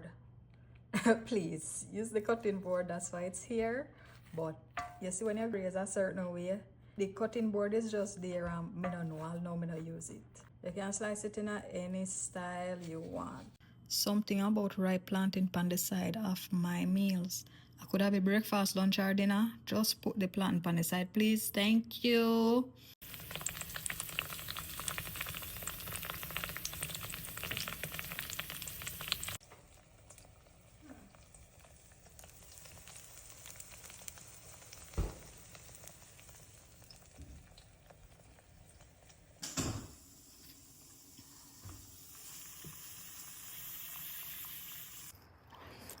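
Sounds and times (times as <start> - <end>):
plantain frying in hot oil: 23.0 - 45.2.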